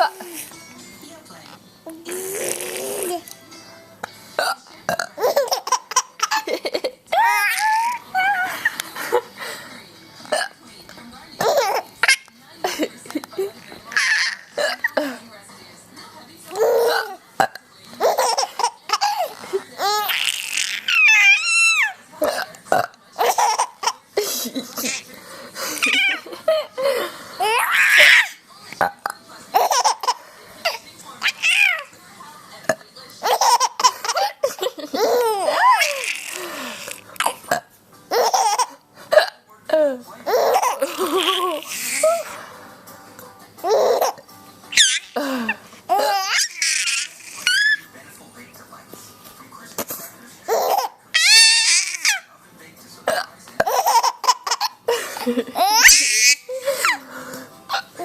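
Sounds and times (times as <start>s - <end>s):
baby laughing: 5.2s - 9.2s, 11.4s - 12.8s, 13.9s - 14.7s, 16.5s - 17.2s, 18.0s - 22.0s, 23.2s - 28.4s, 29.5s - 31.9s, 33.2s - 37.4s, 38.1s - 38.8s, 40.3s - 42.4s, 43.6s - 47.8s, 50.5s - 52.2s, 53.6s - 57.0s
baby squealing: 7.1s - 8.5s, 19.8s - 22.0s, 27.4s - 28.4s, 35.0s - 37.0s, 44.8s - 45.2s, 45.9s - 47.8s, 50.5s - 52.2s, 55.6s - 56.4s.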